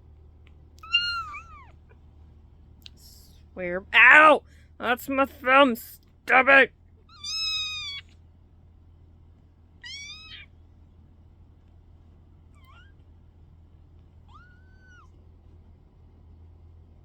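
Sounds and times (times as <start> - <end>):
kitten mewing: 0.8 - 1.9, 7.1 - 8.1, 9.8 - 10.5, 12.6 - 13.0, 14.2 - 15.1.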